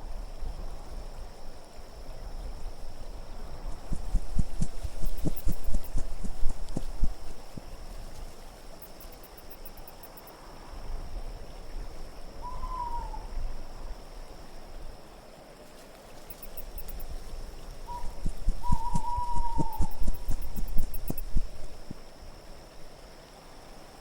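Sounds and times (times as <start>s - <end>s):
steady wind: 0.0s - 15.1s, 16.1s - 23.3s
owl hooting: 12.4s - 13.3s, 17.8s - 21.9s.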